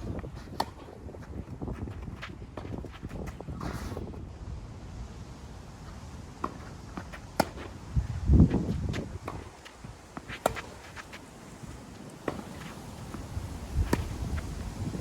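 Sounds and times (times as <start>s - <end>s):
tennis ball hitting racket: 0.0s - 3.9s, 6.4s - 7.8s, 8.5s - 11.3s, 12.2s - 14.5s
footsteps on court: 0.0s - 4.2s, 5.8s - 7.8s, 8.4s - 14.8s
wind buffeting microphone: 0.0s - 4.4s, 7.8s - 10.1s, 13.2s - 15.0s.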